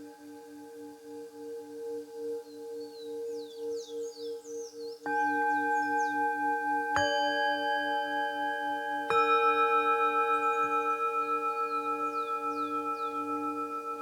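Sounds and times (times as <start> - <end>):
birds chirping faintly: 0.0 - 14.0
singing bowls ringing: 5.0 - 14.0.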